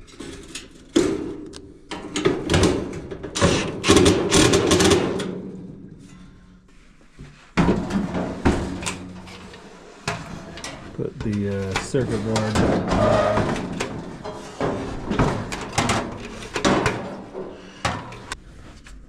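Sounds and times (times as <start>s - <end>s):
washer parts clunking and rattling: 0.0s - 6.4s, 7.6s - 18.4s.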